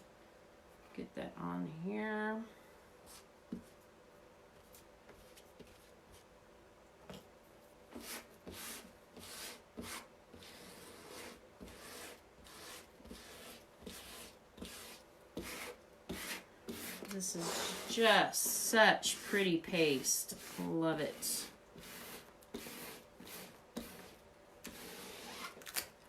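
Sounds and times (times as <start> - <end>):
squeegee scraping: 8.0 - 25.9.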